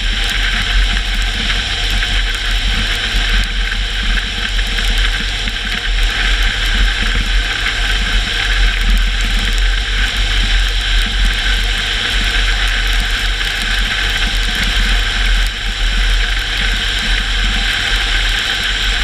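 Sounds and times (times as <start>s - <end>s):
low engine and road rumble: 0.0s - 19.0s
tyres hissing on wet road: 0.0s - 19.0s.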